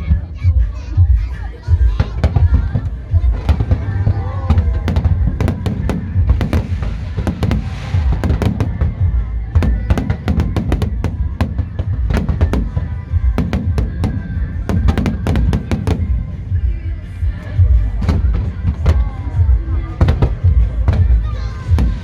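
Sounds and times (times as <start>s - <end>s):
deep rumble: 1.0s - 22.0s
fireworks bursting: 2.0s - 16.8s, 20.0s - 22.0s.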